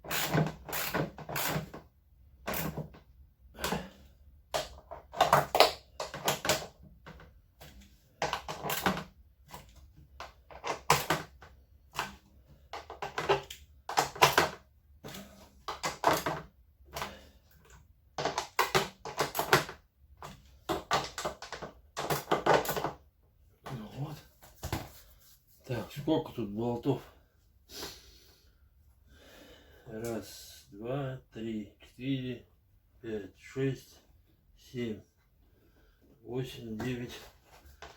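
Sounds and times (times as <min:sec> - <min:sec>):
screwdriver rattling screws: 0:00.0 - 0:01.8, 0:08.2 - 0:12.2, 0:12.8 - 0:14.6, 0:18.2 - 0:23.0.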